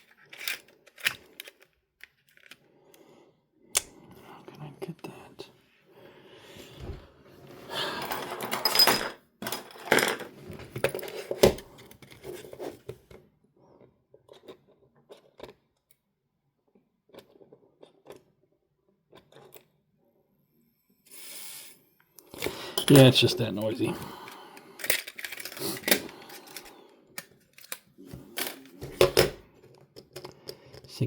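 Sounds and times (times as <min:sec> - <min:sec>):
clicks and rattles of handling: 0:00.0 - 0:02.7, 0:22.3 - 0:31.0.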